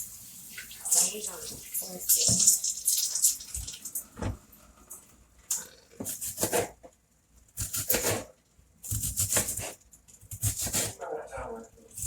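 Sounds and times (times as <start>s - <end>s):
knife slicing onion on board: 6.0s - 6.8s, 7.6s - 11.0s.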